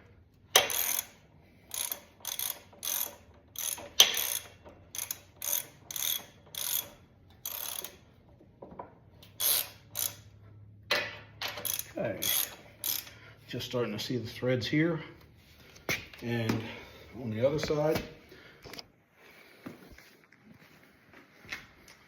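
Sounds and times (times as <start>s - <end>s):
ratchet wrench clicking: 0.5s - 8.1s, 9.2s - 10.3s, 11.4s - 13.2s.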